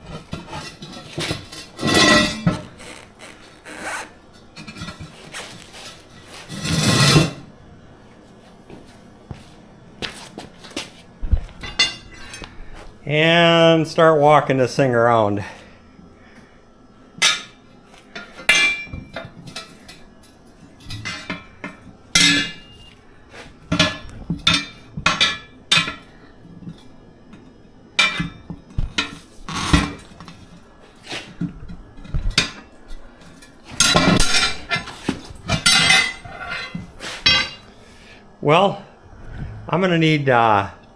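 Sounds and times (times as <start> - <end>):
tire irons clanking on metal rim: 0.6 - 2.8, 33.8 - 37.6
metal scraping: 1.4 - 4.2.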